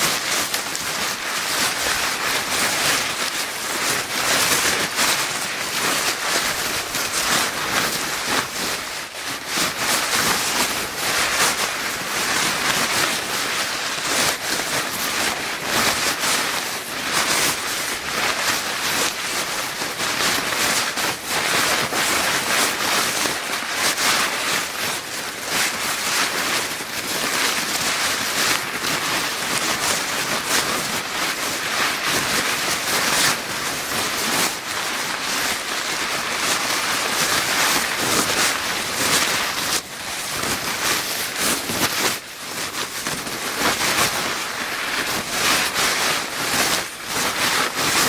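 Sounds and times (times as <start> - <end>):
paper bag crinkling: 0.0 - 48.0.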